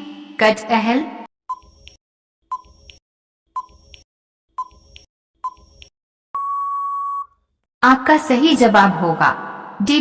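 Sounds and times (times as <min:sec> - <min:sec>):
long steady beep: 0:06.4 - 0:07.4.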